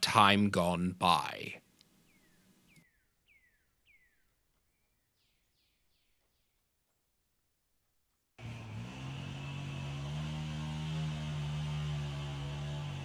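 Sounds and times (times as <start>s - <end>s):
loud engine-like drone: 8.4s - 13.0s.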